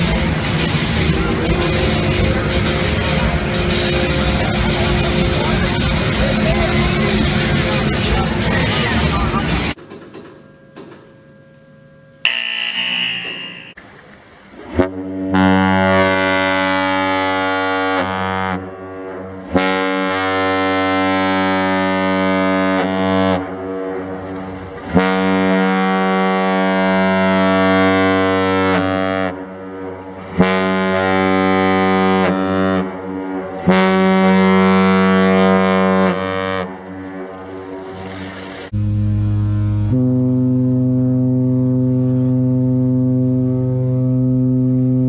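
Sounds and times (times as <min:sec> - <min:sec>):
ship's horn blasts: 0:14.7 - 0:45.0.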